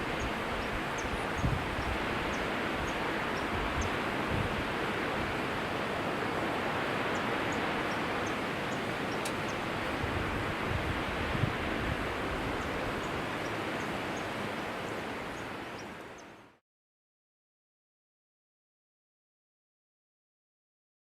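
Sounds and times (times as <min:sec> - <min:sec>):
waterfall rushing: 0:00.0 - 0:16.2.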